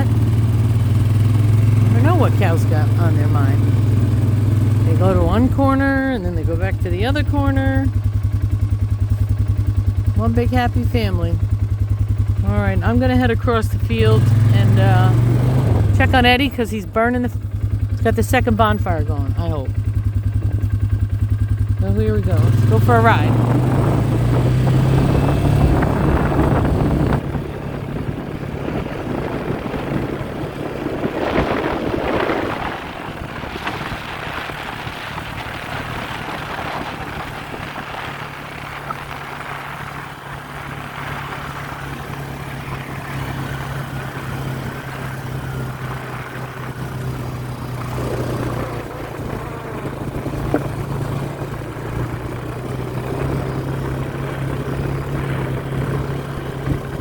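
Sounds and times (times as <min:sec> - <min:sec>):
farm vehicle engine running: 0:00.0 - 0:57.0.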